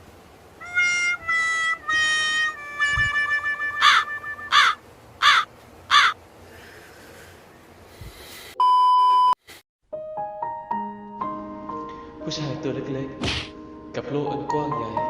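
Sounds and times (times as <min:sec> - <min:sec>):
crow cawing: 0:03.8 - 0:06.8.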